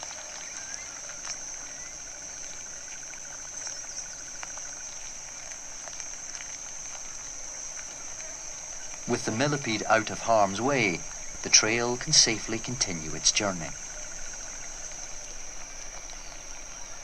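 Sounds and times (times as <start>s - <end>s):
small ticks: 0.0s - 10.0s
faint rapid insect trill: 0.0s - 17.0s.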